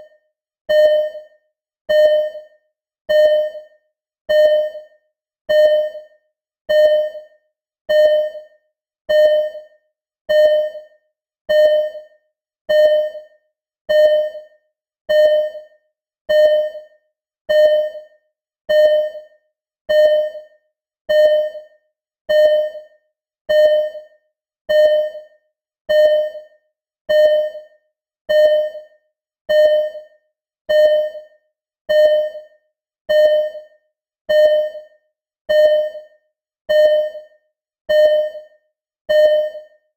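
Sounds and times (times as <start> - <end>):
heart monitor beeping: 0.7 - 1.3, 1.9 - 2.5, 3.1 - 3.7, 4.3 - 4.9, 5.5 - 6.1, 6.7 - 7.3, 7.9 - 8.5, 9.1 - 9.7, 10.3 - 10.9, 11.5 - 12.1, 12.7 - 13.3, 13.9 - 14.4, 15.1 - 15.7, 16.3 - 16.9, 17.5 - 18.1, 18.7 - 19.3, 19.9 - 20.5, 21.1 - 21.7, 22.3 - 22.9, 23.5 - 24.1, 24.7 - 25.3, 25.9 - 26.5, 27.1 - 27.7, 28.3 - 28.9, 29.5 - 30.1, 30.7 - 31.3, 31.9 - 32.5, 33.1 - 33.7, 34.3 - 34.9, 35.5 - 36.1, 36.7 - 37.3, 37.9 - 38.5, 39.1 - 39.8.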